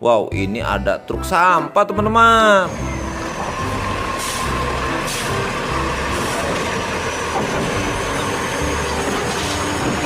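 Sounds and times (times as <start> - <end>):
truck engine running: 2.7 - 10.0.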